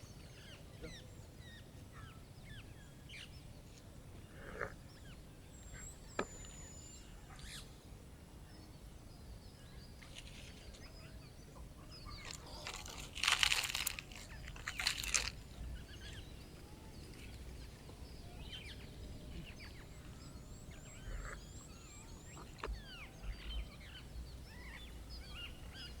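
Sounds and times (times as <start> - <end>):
small birds chirping and trilling: 0.0 - 26.0.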